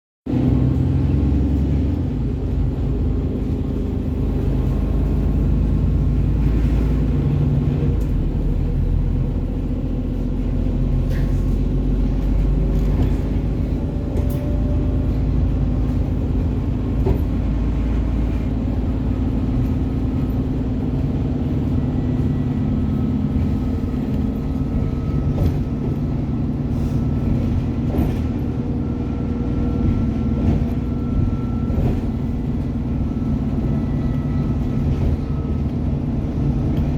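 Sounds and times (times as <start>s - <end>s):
bus diesel engine running: 0.2s - 36.9s.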